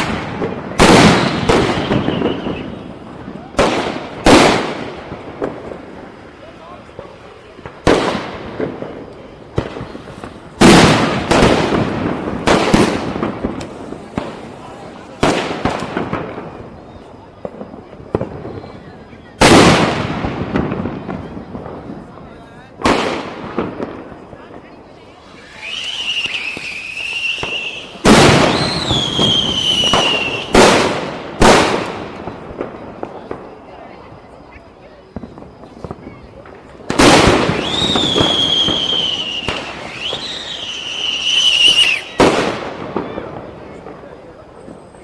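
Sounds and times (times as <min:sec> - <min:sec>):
firecrackers bursting: 0:00.0 - 0:45.0
firework whistle falling: 0:00.8 - 0:03.6, 0:25.2 - 0:30.6, 0:37.4 - 0:42.4.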